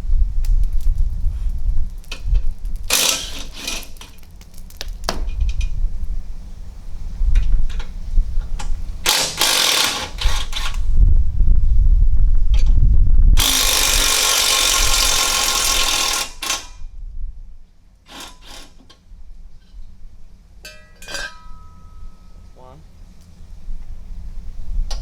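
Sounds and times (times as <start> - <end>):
power tool undoing bolts: 2.9 - 4.2, 8.6 - 10.9, 13.4 - 16.8, 18.1 - 19.0.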